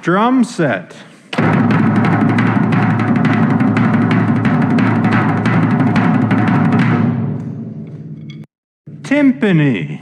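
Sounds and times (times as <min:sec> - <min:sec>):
drum kit rapid strokes: 0:01.4 - 0:07.4.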